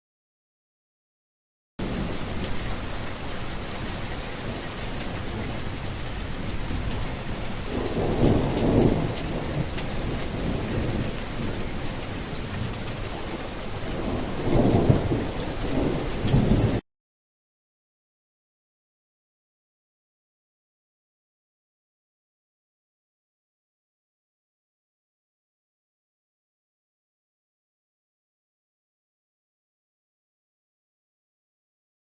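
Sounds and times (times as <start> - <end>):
heavy rain: 1.8 - 16.8
low rolls of thunder: 1.8 - 16.8.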